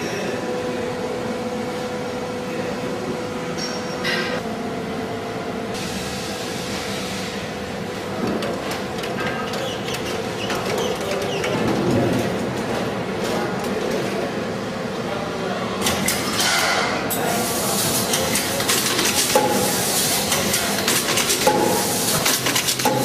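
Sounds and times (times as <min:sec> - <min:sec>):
machine mechanical hum: 0:00.0 - 0:23.0
rapid mechanical clicks: 0:20.3 - 0:23.0.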